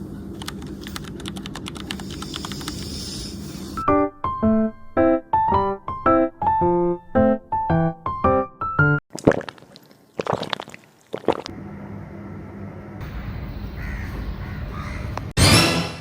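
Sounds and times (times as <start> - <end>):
piano notes: 3.8 - 9.0
crow cawing: 13.7 - 15.3.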